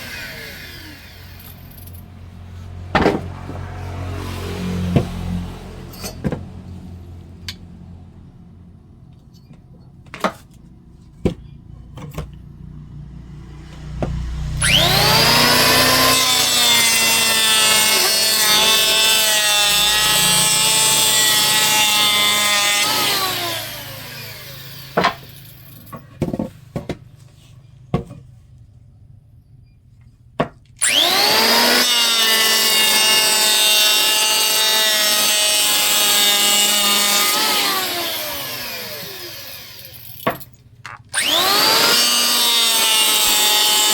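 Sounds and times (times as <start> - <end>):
power tool cutting wood: 0.0 - 1.8, 13.5 - 26.0, 30.8 - 43.9.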